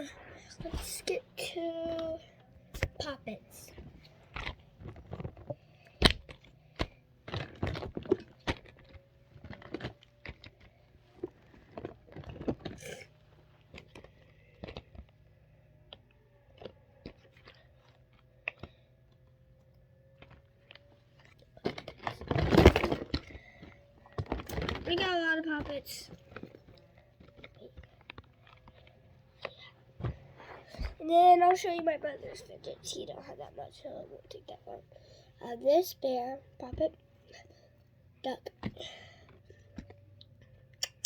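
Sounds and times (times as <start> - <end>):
rustling and clatter: 0.0 - 15.6, 19.9 - 34.7
fidget toys clicking: 40.8 - 41.0.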